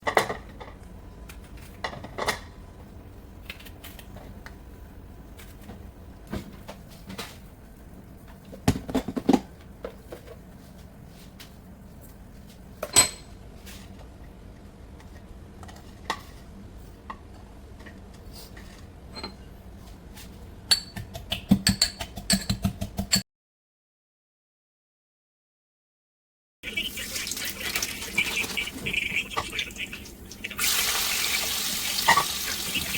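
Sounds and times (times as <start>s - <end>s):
metal utensils clinking on dishes: 32.0s - 32.9s.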